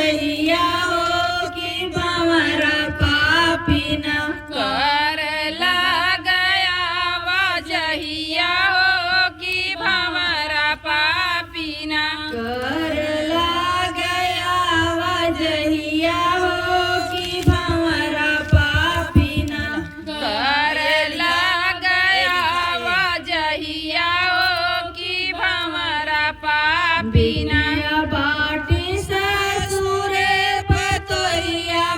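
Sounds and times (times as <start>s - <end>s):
low beats: 14.7s - 20.0s, 27.0s - 31.9s
instrumental accompaniment: 27.0s - 31.9s.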